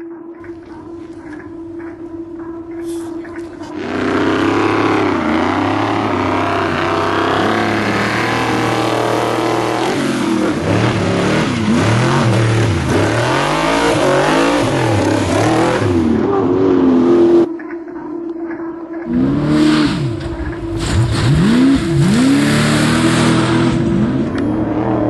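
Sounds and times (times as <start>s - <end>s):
engine revving at high revs: 3.6s - 17.5s, 19.0s - 25.0s.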